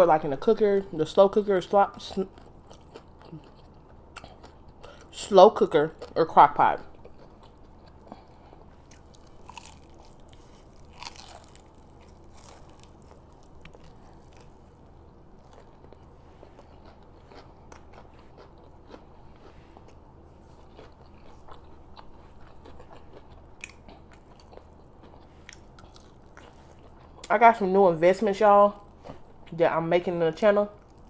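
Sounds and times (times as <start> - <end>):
faint low hum: 0.0 - 31.0
person chewing food: 2.0 - 5.2, 5.9 - 27.3.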